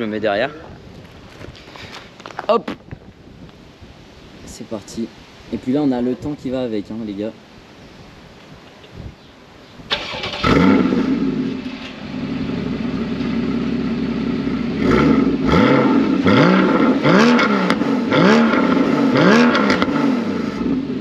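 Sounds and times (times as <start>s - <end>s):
car engine starting and idling: 9.9s - 21.0s.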